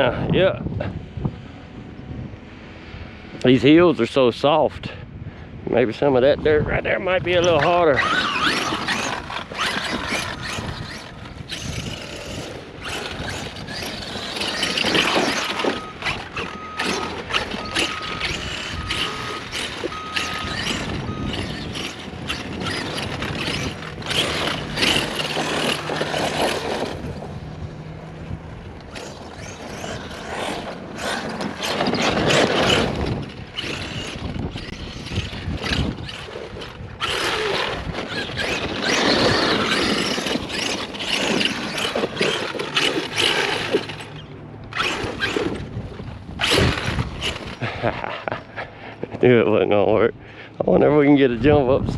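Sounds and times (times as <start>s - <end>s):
rc truck electric motor surging: 7.3s - 47.9s.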